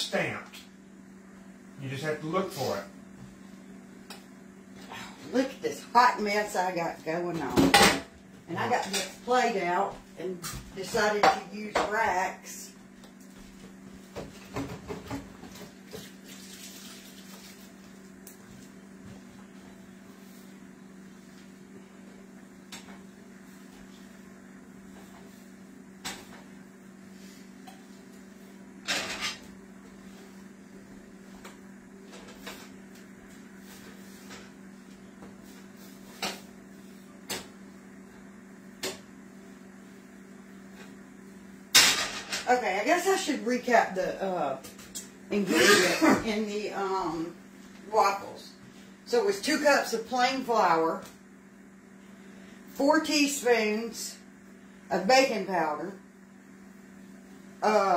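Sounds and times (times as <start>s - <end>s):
steady low hum: 0.0s - 57.9s
kitchen handling noises: 28.8s - 29.6s, 41.7s - 42.5s.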